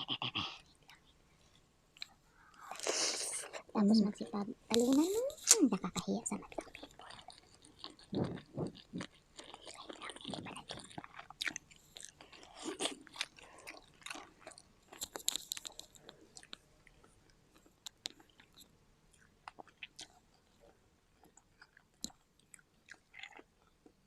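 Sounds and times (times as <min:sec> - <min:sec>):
chewing and biting food: 0:06.4 - 0:24.0.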